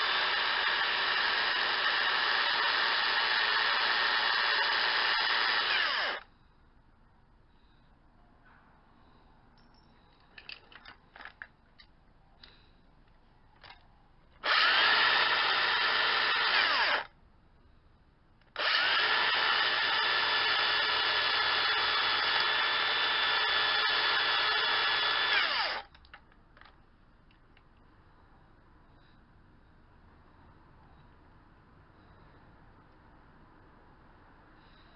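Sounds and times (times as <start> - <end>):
electric power tool spinning: 0.0 - 6.2, 14.4 - 17.1, 18.6 - 26.0.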